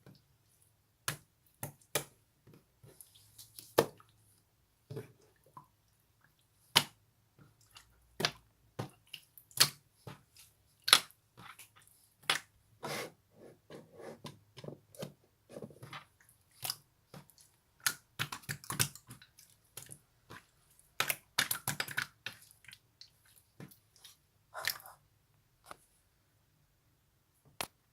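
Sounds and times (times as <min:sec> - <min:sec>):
slime squelching by hand: 0:05.0 - 0:12.6, 0:15.8 - 0:25.8.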